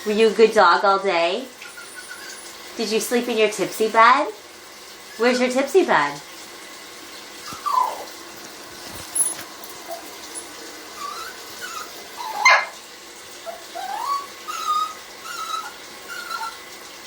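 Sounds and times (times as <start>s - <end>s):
dog whining: 1.6s - 2.6s, 7.4s - 8.2s, 8.8s - 12.8s, 13.4s - 16.6s
dog yelping: 1.6s - 2.6s, 7.4s - 8.2s, 9.0s - 12.8s, 13.4s - 16.6s.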